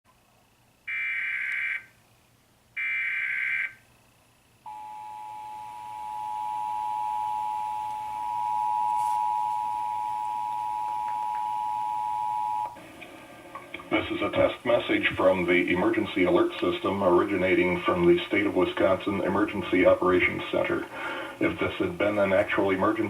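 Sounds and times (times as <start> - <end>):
two-tone attention signal: 4.7 - 12.7
data tone bursts: 4.7 - 12.8.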